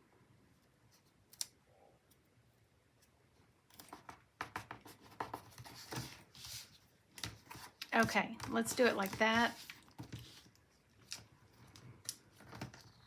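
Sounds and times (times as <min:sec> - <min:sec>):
light scratching and rubbing: 0:03.7 - 0:10.6.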